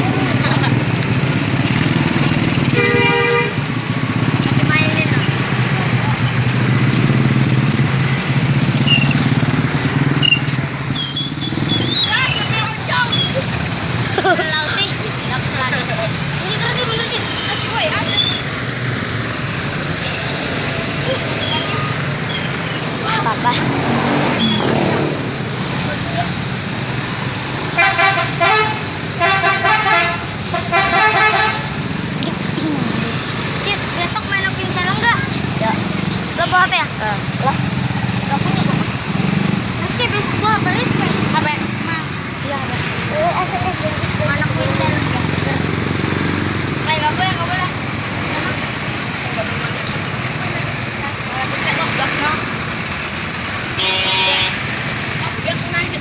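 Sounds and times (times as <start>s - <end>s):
bus engine idling: 0.0s - 23.7s, 25.2s - 56.0s
multi-note bus horn blasts: 2.7s - 3.6s, 27.8s - 31.7s, 53.8s - 54.7s.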